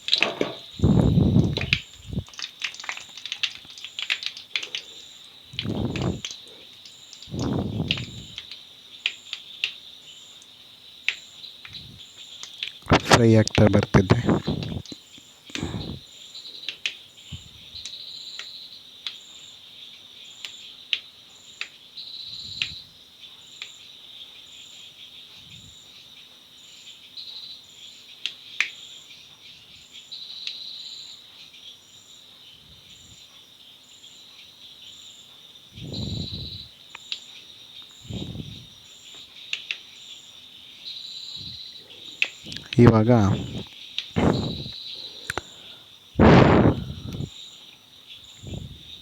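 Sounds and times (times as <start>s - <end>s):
crickets trilling: 0.0s - 49.0s
low muffled sounds: 0.3s - 2.3s, 5.5s - 6.3s, 7.3s - 8.4s, 12.9s - 16.0s, 35.8s - 36.7s, 38.0s - 38.7s, 42.4s - 45.5s, 46.2s - 47.3s, 48.4s - 49.0s.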